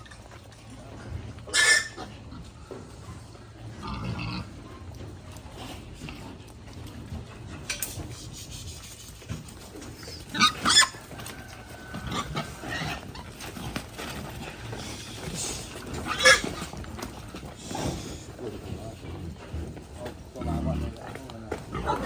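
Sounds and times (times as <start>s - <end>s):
pigs grunting: 0.0s - 22.0s
pigs squealing: 1.4s - 2.6s, 3.7s - 4.6s, 7.7s - 22.0s.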